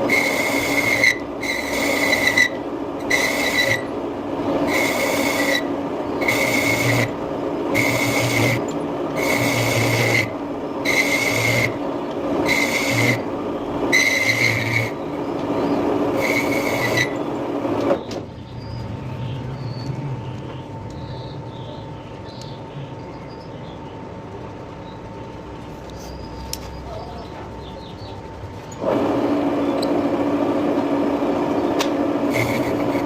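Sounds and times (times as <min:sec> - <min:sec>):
metal lathe humming: 0:00.0 - 0:18.0, 0:25.6 - 0:33.0.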